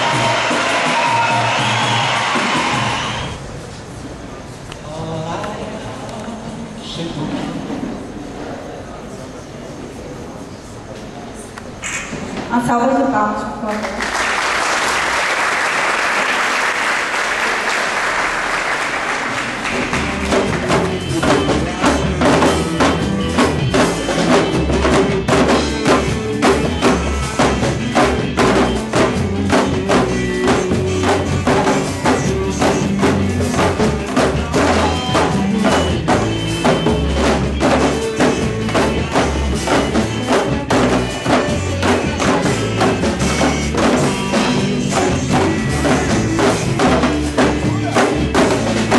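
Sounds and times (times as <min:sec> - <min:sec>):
applause: 0:00.0 - 0:03.2, 0:13.7 - 0:20.8
low drum beats: 0:00.0 - 0:03.4, 0:19.4 - 0:48.9
percussion-heavy music: 0:00.0 - 0:03.5, 0:14.0 - 0:48.9.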